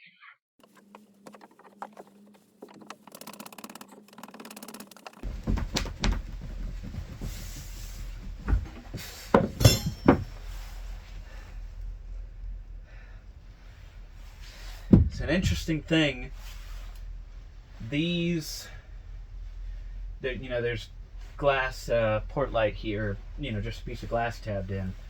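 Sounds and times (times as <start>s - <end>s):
steady low hum: 5.2s - 25.0s
hard knocks of pieces set down: 8.4s - 10.4s.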